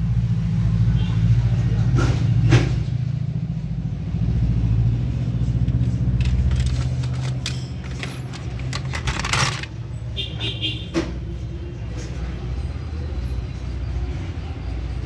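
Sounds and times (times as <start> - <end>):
engine idling: 1.4 - 10.3.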